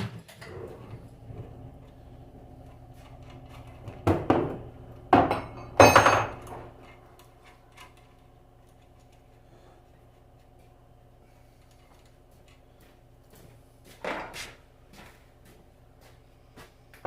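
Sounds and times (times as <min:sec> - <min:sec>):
steady low hum: 0:00.0 - 0:17.0
metal tools clanking on workbench: 0:05.3 - 0:06.6.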